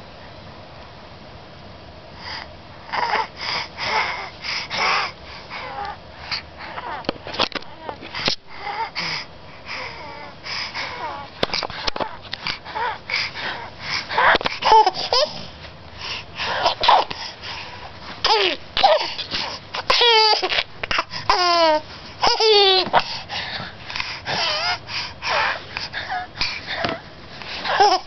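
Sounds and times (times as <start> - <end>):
baby wheezy breathing: 2.2 - 7.1, 7.7 - 28.0
baby babbling and giggling: 14.1 - 15.4, 18.2 - 19.2, 19.8 - 23.2, 27.6 - 28.0.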